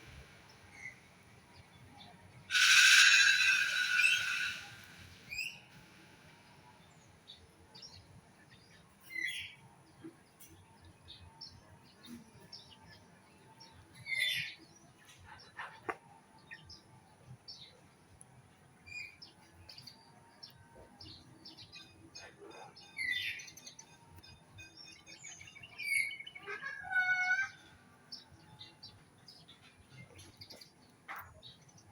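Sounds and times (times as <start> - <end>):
birds chirping: 2.5 - 5.5.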